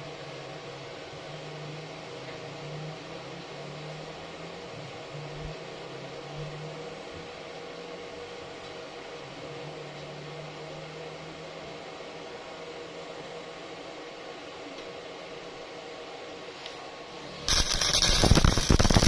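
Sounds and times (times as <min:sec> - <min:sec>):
constant low hum: 0:00.0 - 0:19.0
arc welding hiss: 0:17.5 - 0:19.0.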